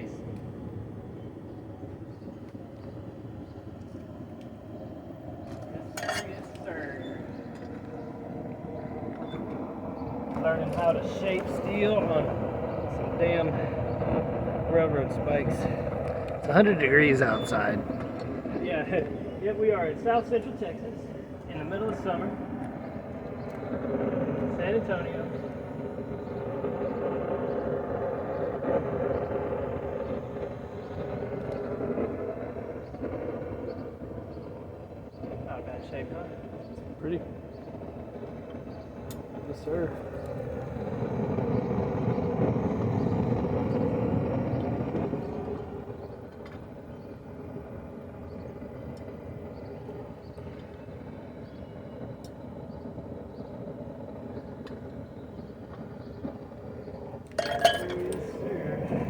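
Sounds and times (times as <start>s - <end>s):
forge roaring: 4.2s - 33.5s, 57.4s - 59.0s.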